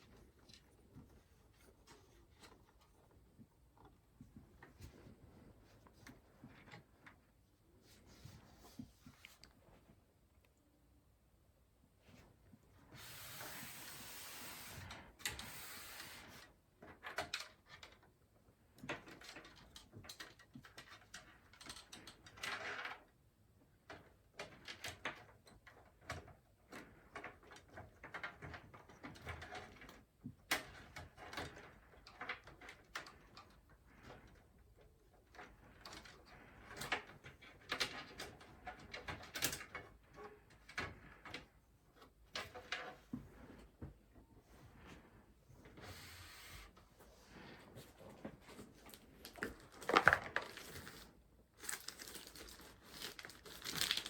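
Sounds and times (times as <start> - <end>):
rustling: 42.6 - 54.0.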